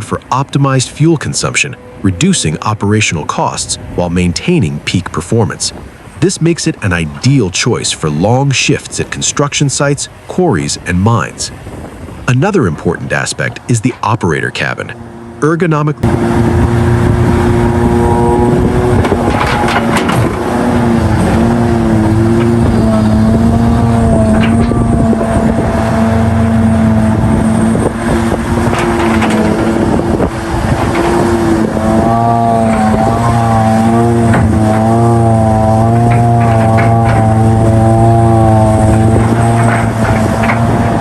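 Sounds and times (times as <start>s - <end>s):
excavator diesel engine running: 6.8s - 41.0s
sharp knocks: 27.9s - 38.0s.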